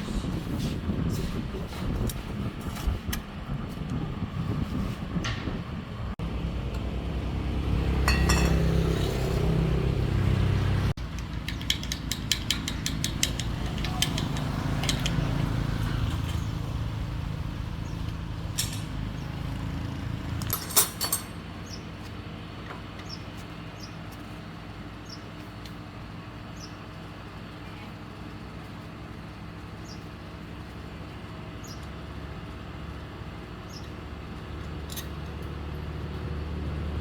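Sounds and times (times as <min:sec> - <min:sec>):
low motor hum: 0:00.0 - 0:37.0
metal tools clinking and tapping: 0:08.0 - 0:09.2, 0:11.1 - 0:16.6, 0:18.5 - 0:19.1, 0:20.4 - 0:21.4.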